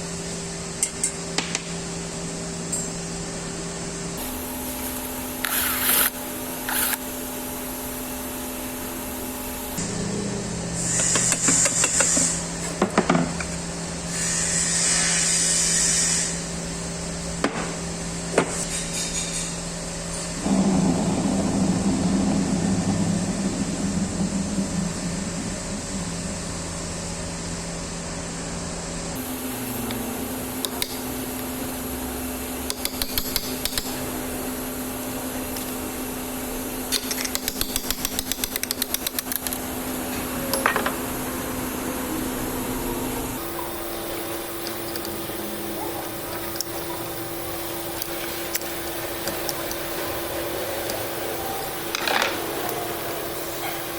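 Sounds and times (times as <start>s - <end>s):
low hum: 19.9s - 30.6s.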